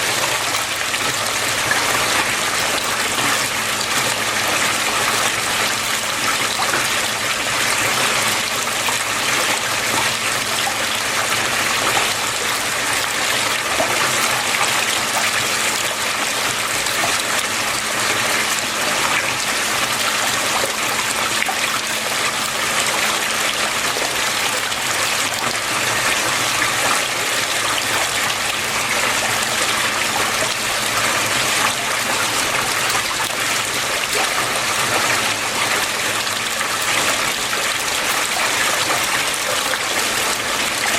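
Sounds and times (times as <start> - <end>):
water flowing and splashing: 0.0 - 40.9.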